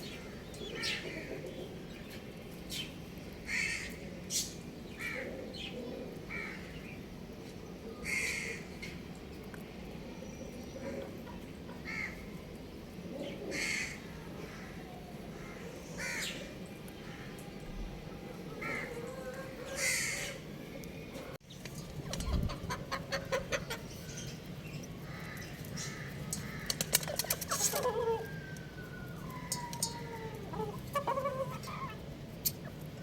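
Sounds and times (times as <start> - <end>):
chickens clucking and calling: 0.0 - 2.4, 10.6 - 33.0.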